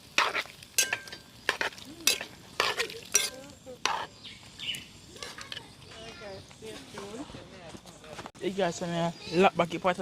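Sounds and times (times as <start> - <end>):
spoon scraping inside a pot: 0.1 - 4.2.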